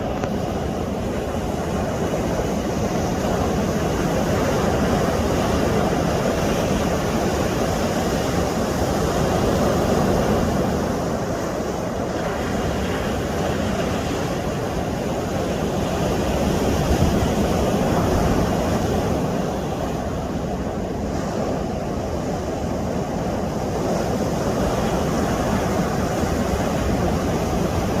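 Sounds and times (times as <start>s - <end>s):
surf washing against rocks: 0.0s - 28.0s.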